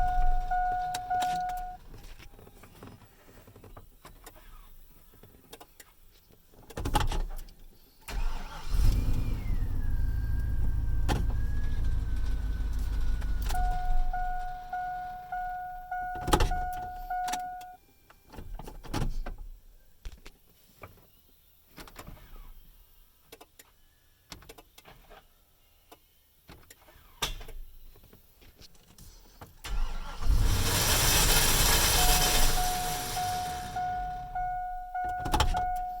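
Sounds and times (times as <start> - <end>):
truck warning chime beeping: 0.0 - 1.8, 12.1 - 17.8, 31.2 - 36.0
truck engine running loudly: 30.2 - 36.0.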